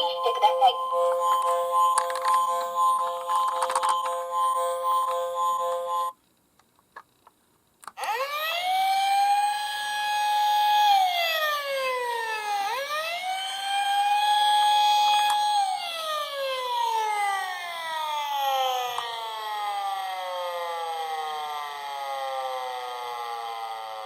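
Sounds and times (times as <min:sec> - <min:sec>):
steady electronic tones: 0:00.0 - 0:06.1
toy electronic siren wailing: 0:00.0 - 0:06.1, 0:08.0 - 0:24.0.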